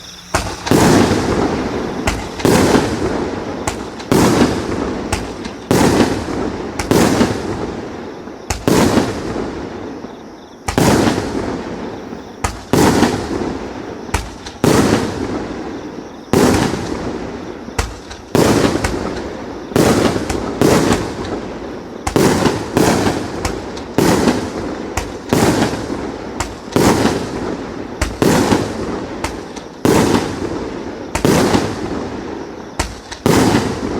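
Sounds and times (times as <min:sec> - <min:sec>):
fireworks cake firing shots: 0:00.3 - 0:09.9, 0:10.6 - 0:33.9.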